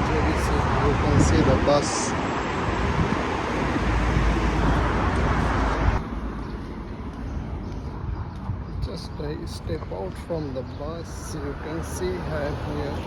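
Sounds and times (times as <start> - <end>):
bus engine rumble: 0.0 - 7.6
road traffic: 0.0 - 13.0.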